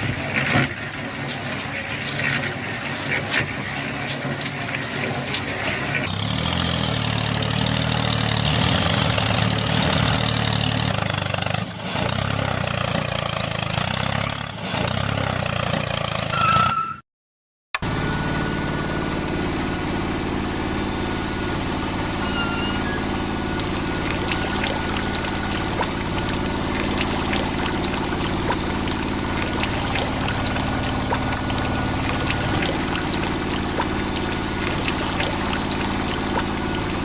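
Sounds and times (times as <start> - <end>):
motor hum: 17.8 - 37.0.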